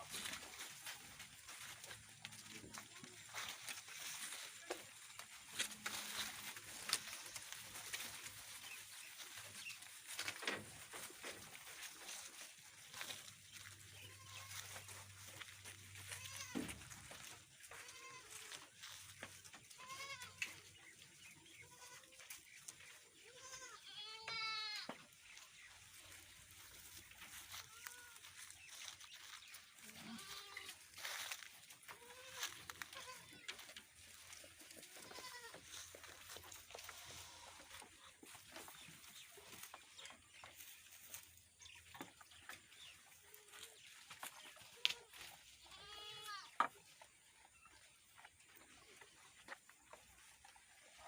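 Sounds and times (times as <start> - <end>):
goat kids bleating: 11.8 - 22.4, 23.1 - 25.0, 27.3 - 38.0, 43.2 - 46.6
goat bleat: 16.0 - 16.8, 17.7 - 18.6, 19.7 - 20.5, 21.6 - 22.2, 23.2 - 24.9, 29.8 - 30.8, 31.9 - 33.5, 34.8 - 35.8, 36.8 - 37.8, 44.7 - 46.6.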